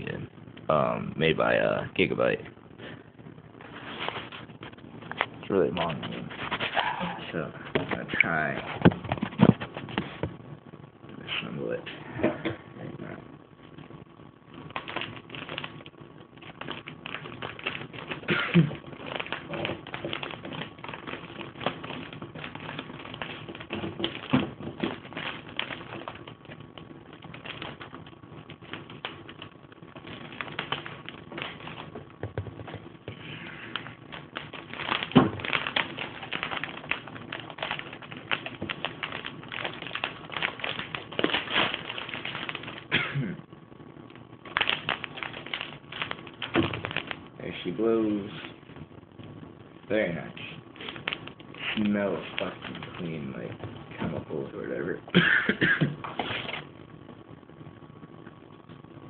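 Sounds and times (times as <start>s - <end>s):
packaging clicks and crinkles: 14.7s - 43.2s, 44.4s - 48.9s, 50.0s - 54.8s, 56.0s - 56.7s.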